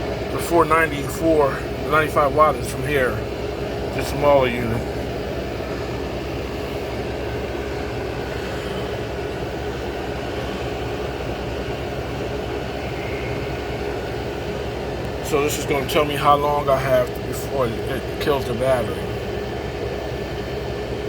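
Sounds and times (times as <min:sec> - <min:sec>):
air conditioner running: 0:00.0 - 0:21.0.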